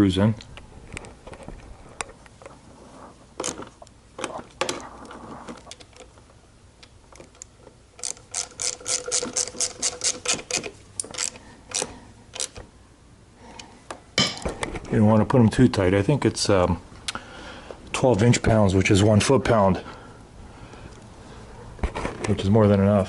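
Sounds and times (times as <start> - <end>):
ratchet wrench clicking: 8.0 - 12.6.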